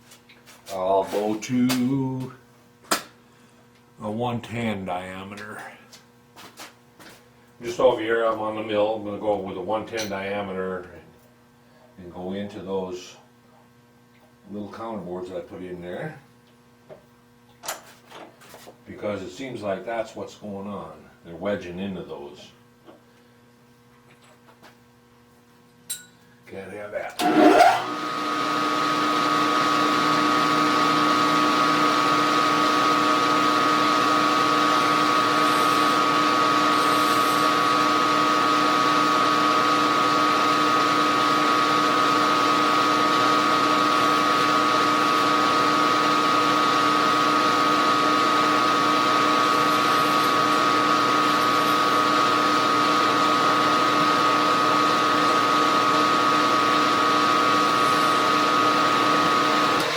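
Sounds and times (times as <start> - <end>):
milling machine spindle whine: 27.2 - 59.9.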